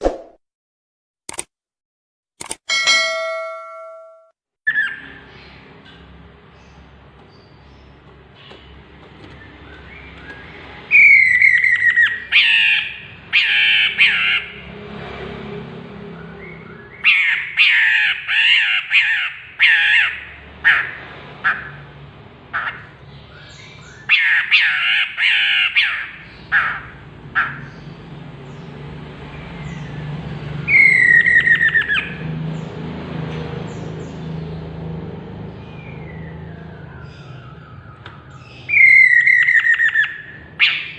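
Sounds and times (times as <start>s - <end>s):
bird calling harsh rapid notes: 6.7s - 14.6s, 38.6s - 40.9s.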